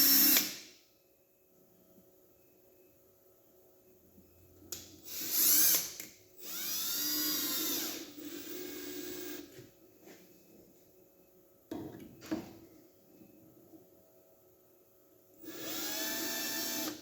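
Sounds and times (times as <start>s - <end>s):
cordless drill driving screws: 5.1s - 9.4s, 15.4s - 17.0s.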